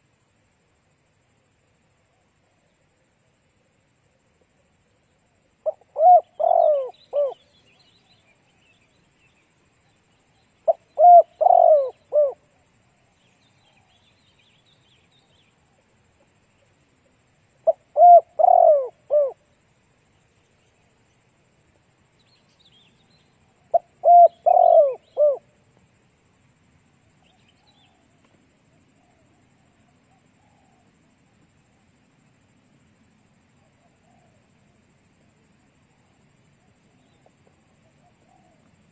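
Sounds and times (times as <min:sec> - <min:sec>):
faint small-bird chirps: 0:04.9 - 0:12.3, 0:22.2 - 0:25.4, 0:27.2 - 0:28.4
dove cooing: 0:05.6 - 0:07.5, 0:10.6 - 0:12.5, 0:17.6 - 0:19.4, 0:23.7 - 0:25.5, 0:33.7 - 0:34.5, 0:37.8 - 0:38.9.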